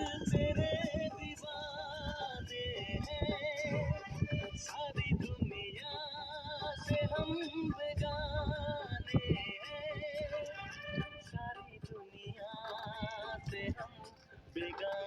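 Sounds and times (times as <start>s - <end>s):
processed vocal song over beat: 0.0s - 15.0s.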